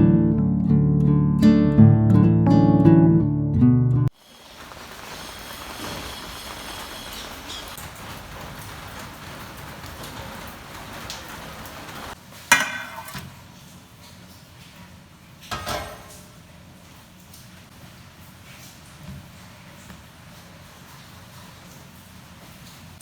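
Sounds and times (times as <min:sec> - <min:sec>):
rain hissing: 0:04.1 - 0:14.2.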